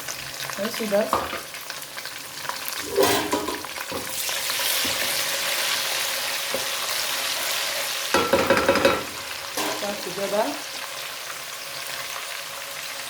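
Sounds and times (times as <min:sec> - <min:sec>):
onions sizzling in oil: 0:00.0 - 0:13.0
knock on a pot: 0:08.2 - 0:09.8.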